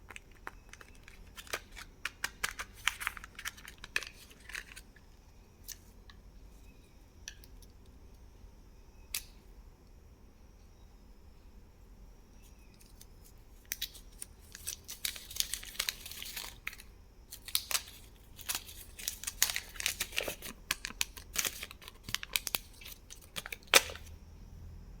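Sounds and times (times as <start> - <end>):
candy wrappers crinkling: 0.0 - 4.9, 12.8 - 24.1.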